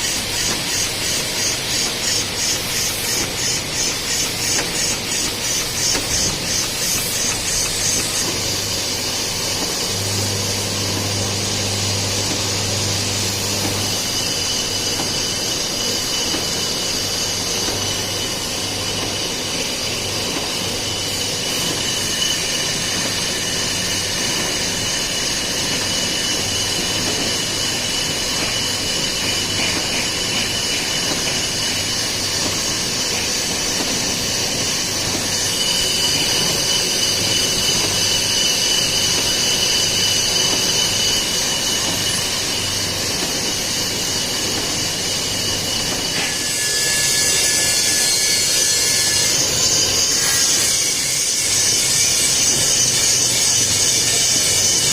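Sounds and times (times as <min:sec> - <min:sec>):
mill machinery hiss and whine: 0:00.0 - 0:54.9.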